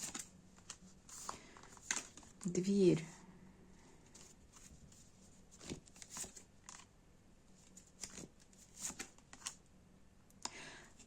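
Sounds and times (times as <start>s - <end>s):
soft handling rustles and clicks: 0.0s - 2.6s, 4.0s - 6.9s, 7.5s - 9.6s.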